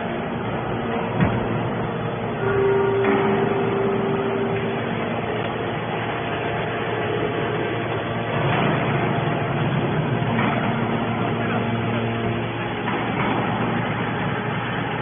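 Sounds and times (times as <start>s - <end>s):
can baler mechanical hum: 0.0s - 15.0s.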